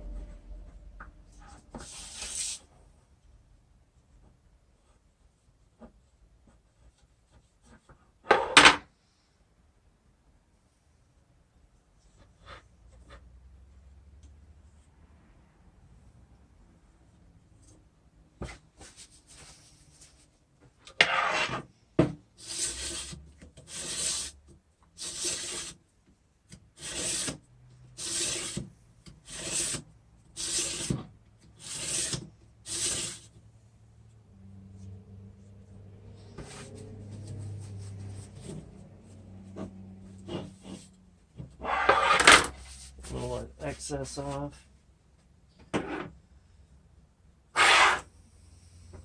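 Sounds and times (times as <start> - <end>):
faint low hum: 0.0 - 7.4.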